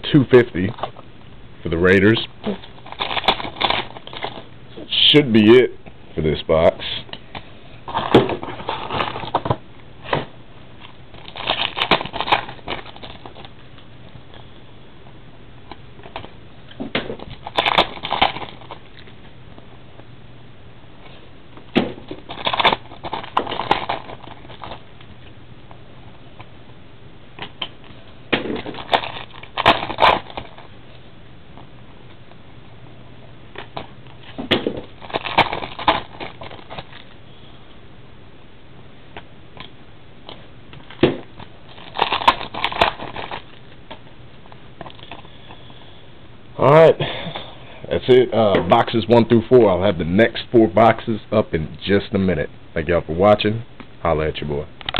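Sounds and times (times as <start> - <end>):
crinkling card packaging: 1.9 - 4.5, 7.8 - 9.6, 10.8 - 14.5, 17.1 - 19.3, 21.8 - 25.4, 27.4 - 30.8, 33.5 - 37.2, 40.3 - 45.7.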